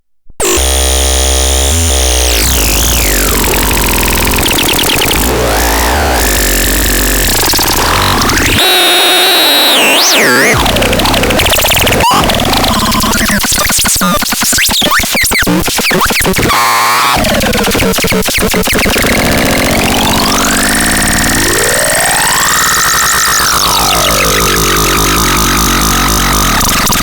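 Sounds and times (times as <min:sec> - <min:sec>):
synthesizer warbling pitches: 0:18.8 - 0:27.0.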